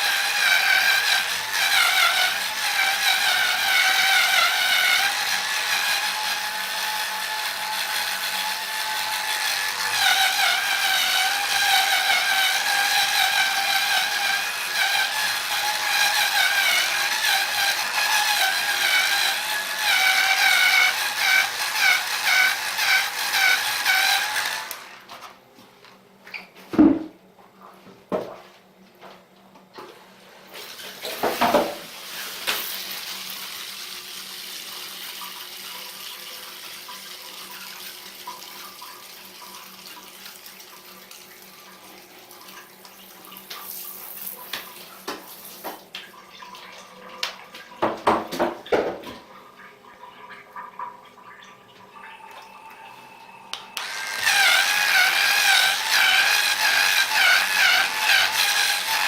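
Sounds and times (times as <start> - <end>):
electric scrubber motor whine: 53.8 - 59.0.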